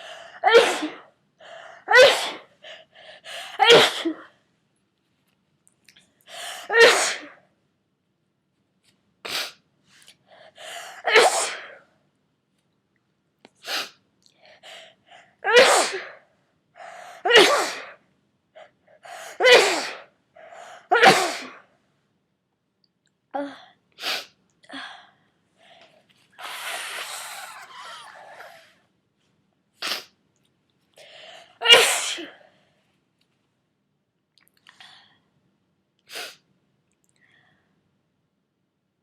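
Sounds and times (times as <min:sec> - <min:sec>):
person sneezing: 0:00.0 - 0:01.1, 0:01.9 - 0:02.5, 0:03.6 - 0:04.2, 0:06.7 - 0:07.4, 0:11.0 - 0:11.8, 0:15.5 - 0:16.2, 0:17.3 - 0:18.0, 0:19.4 - 0:20.1, 0:20.9 - 0:21.6, 0:26.4 - 0:28.7, 0:31.6 - 0:32.4
sniffs: 0:09.3 - 0:10.2, 0:13.6 - 0:14.0, 0:26.3 - 0:28.6, 0:29.8 - 0:30.2, 0:36.1 - 0:36.4
gasping intake of breath: 0:26.4 - 0:28.7.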